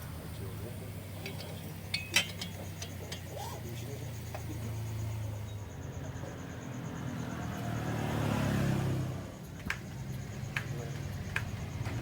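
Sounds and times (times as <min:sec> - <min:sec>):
scooter engine revving: 0:07.0 - 0:10.1.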